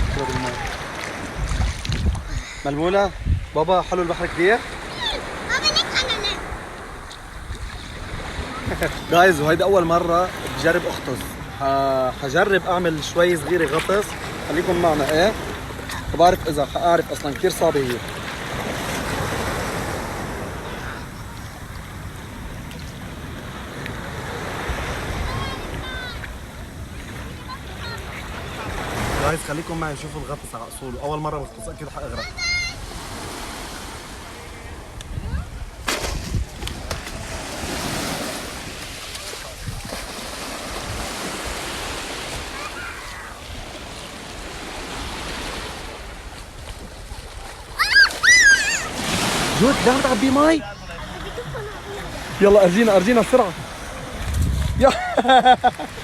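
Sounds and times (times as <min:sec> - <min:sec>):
wind on microphone: 0:00.0 - 0:04.0, 0:06.0 - 0:09.1, 0:31.6 - 0:47.8, 0:53.6 - 0:56.0
sea water splashing: 0:00.0 - 0:56.0.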